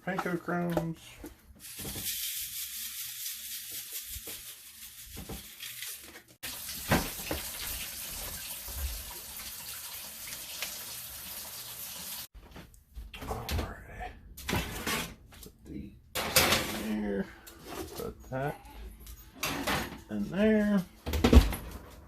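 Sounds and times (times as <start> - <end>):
tap water running into sink: 5.3 - 12.3.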